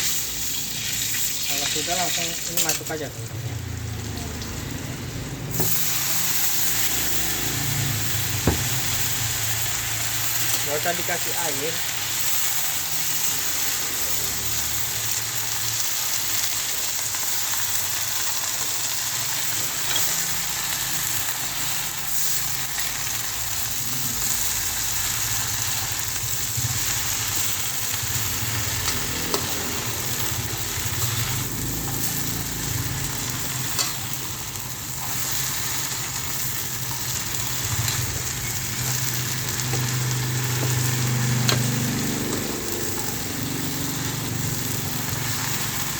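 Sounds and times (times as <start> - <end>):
vegetables sizzling in oil: 0.0 - 45.9
spatula clicking and scraping: 26.8 - 43.7.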